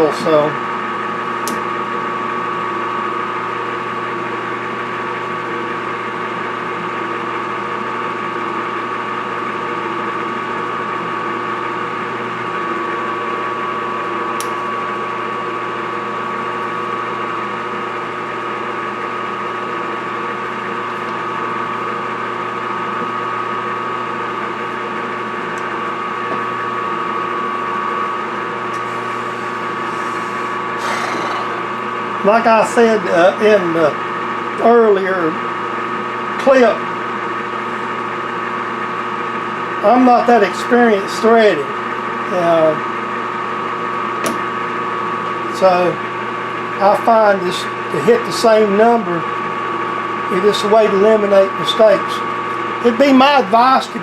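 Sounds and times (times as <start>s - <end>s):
metal lathe running: 0.0s - 54.0s.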